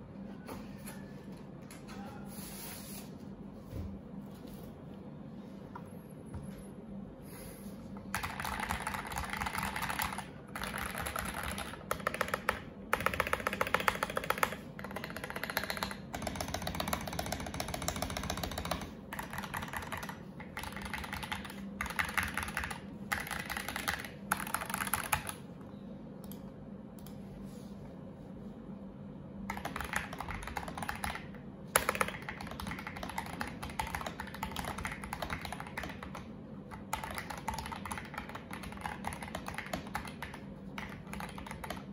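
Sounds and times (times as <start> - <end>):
typing on mechanical keyboard: 8.1 - 25.4, 29.5 - 41.9.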